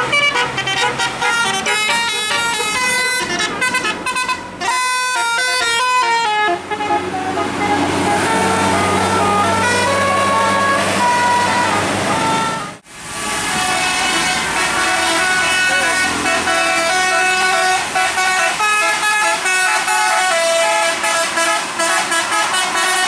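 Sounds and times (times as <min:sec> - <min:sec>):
low engine hum: 0:00.0 - 0:18.3
musical air horn playing a tune: 0:00.0 - 0:23.0.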